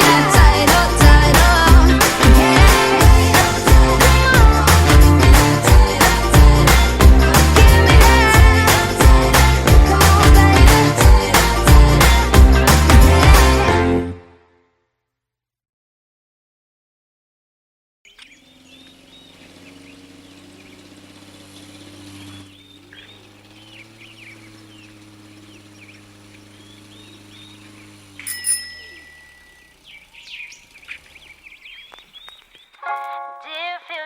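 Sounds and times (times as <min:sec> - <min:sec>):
low hum: 0:18.1 - 0:31.5
birds chirping: 0:18.1 - 0:33.8.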